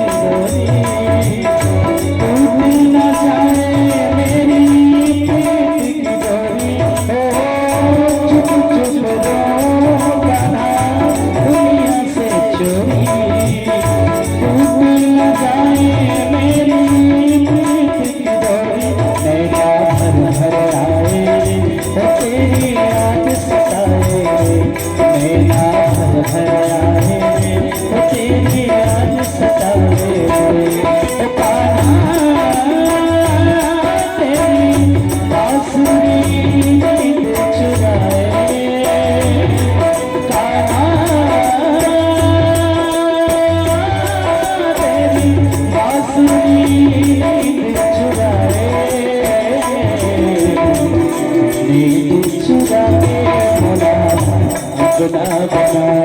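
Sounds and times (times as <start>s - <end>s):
fast jingling percussion: 0.0s - 56.0s
steady drum beat: 0.0s - 56.0s.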